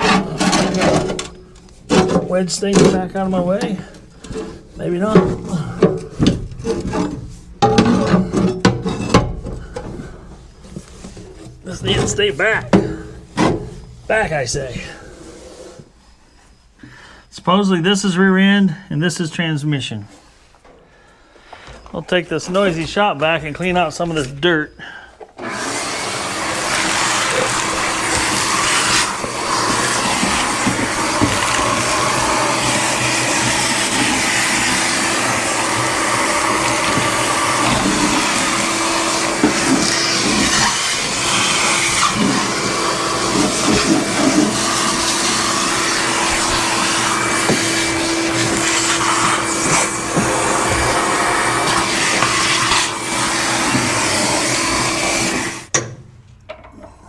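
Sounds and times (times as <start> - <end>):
grit rattling in hose: 0.0 - 14.8, 25.4 - 55.7
shop vac running: 0.0 - 16.1, 25.3 - 55.8.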